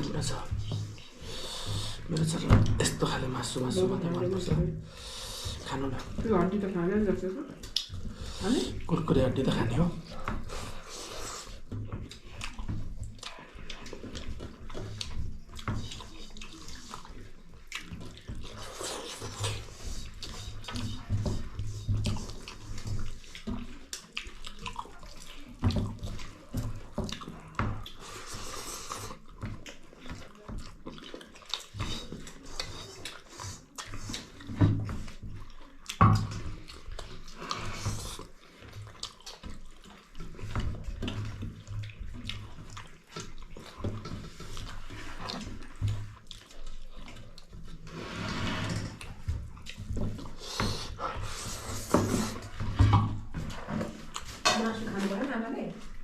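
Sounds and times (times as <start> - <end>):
wet chewing: 7.4 - 48.0, 48.7 - 56.0
lip-smacking: 7.6 - 9.0, 10.3 - 47.8.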